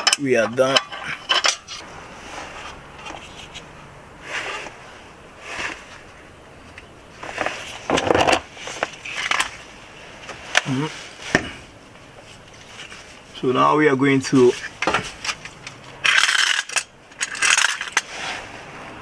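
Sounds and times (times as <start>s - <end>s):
hand tools clinking and scraping: 0.0s - 1.8s, 14.3s - 18.4s.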